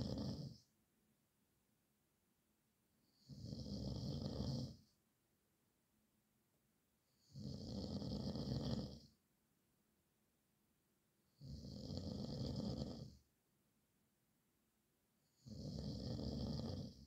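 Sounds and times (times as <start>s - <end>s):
man snoring: 0.0s - 0.6s, 3.2s - 4.8s, 7.2s - 9.1s, 11.4s - 13.2s, 15.4s - 17.0s.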